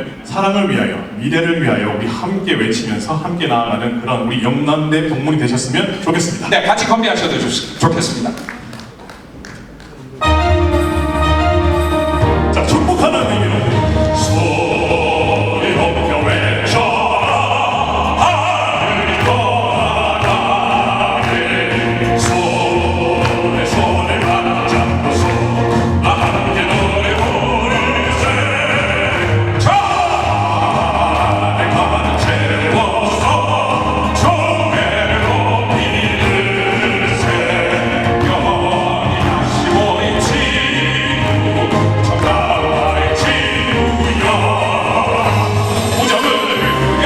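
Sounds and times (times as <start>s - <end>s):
instrumental accompaniment: 9.3s - 47.0s
backing music with bass line: 10.2s - 47.0s
operatic singers: 11.0s - 47.0s.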